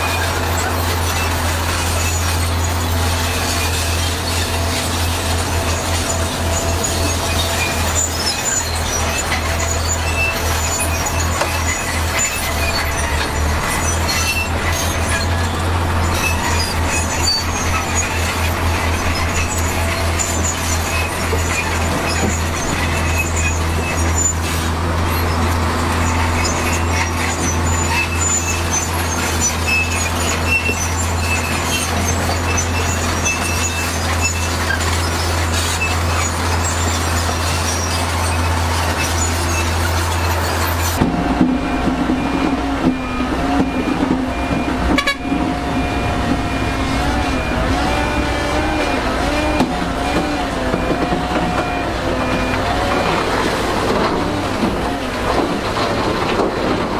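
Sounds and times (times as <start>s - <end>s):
high squeaks and clinks: 0.0s - 56.8s
diesel machinery engine drone: 0.0s - 56.9s.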